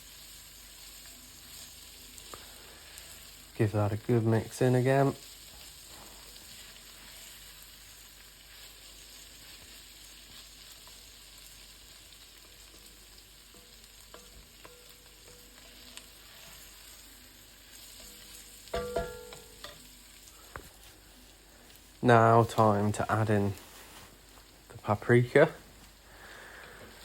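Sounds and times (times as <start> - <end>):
food sizzling in a frying pan: 0.0 - 27.0
sharp knock with ring: 18.8 - 19.6.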